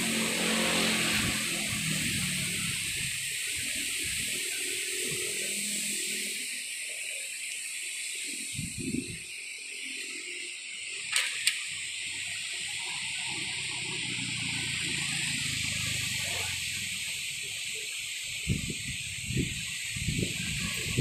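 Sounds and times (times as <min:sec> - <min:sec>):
strong wind blowing: 0:08.5 - 0:09.2, 0:18.4 - 0:21.0
wind rumble on microphone: 0:08.5 - 0:09.2, 0:18.4 - 0:21.0
sharp clicks: 0:11.1 - 0:11.7.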